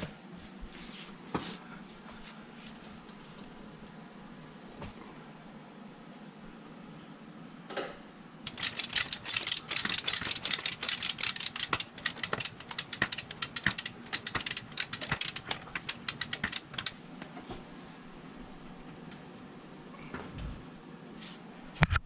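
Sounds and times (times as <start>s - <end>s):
ratchet clicking: 8.5s - 17.0s.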